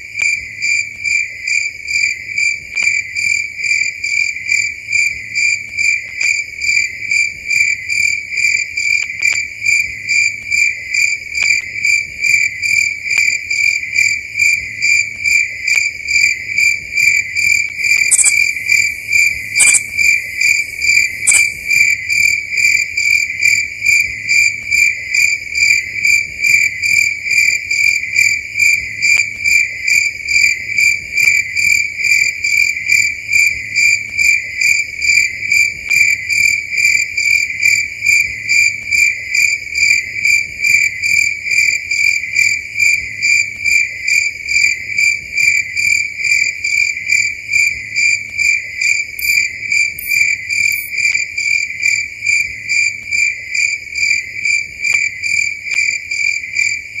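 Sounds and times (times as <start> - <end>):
crickets chirping: 0.0 - 57.0
sharp clicks: 17.7 - 18.9, 19.6 - 19.9, 21.2 - 21.6, 49.2 - 49.4, 50.0 - 51.2.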